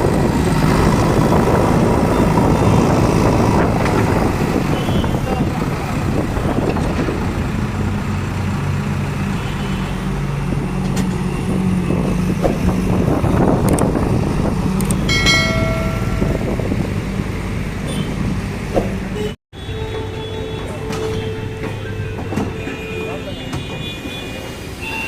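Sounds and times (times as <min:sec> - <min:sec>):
high steady tone: 0:15.1 - 0:17.2.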